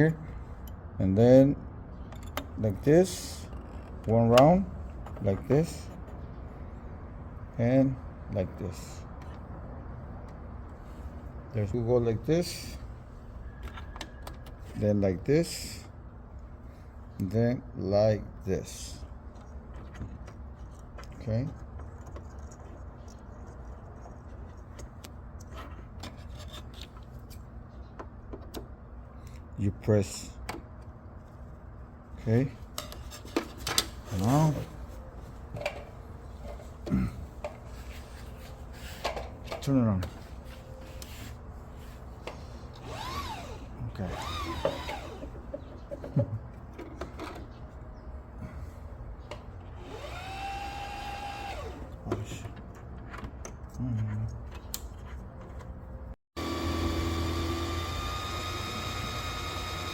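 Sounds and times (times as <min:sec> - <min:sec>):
sewing machine motor whine: 0:42.8 - 0:45.3, 0:49.8 - 0:51.9, 0:56.4 - 0:59.9.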